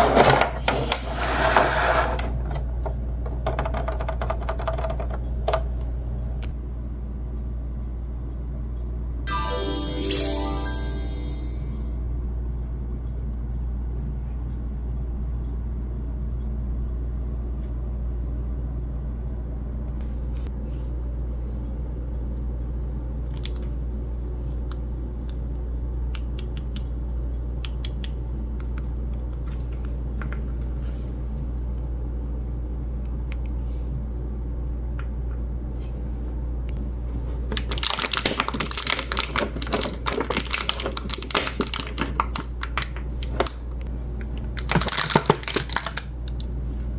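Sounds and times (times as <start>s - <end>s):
plastic toy pieces clicking: 3.5s - 5.6s
steady low hum: 11.4s - 37.6s
crinkling: 37.4s - 46.5s.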